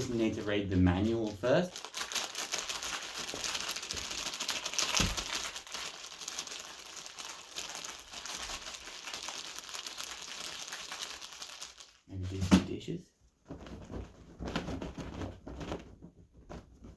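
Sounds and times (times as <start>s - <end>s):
crumpling and crinkling: 0.0s - 12.4s.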